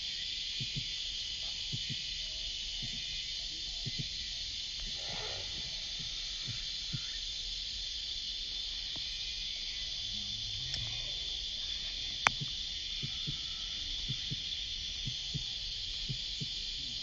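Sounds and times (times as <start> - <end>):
cicadas buzzing: 0.0 - 17.0
soft low thumps: 1.7 - 2.1, 3.8 - 7.2, 12.2 - 16.8.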